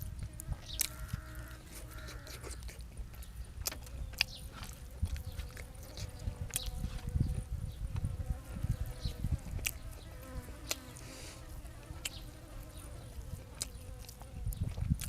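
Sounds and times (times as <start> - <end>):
person chewing food: 1.7 - 7.1.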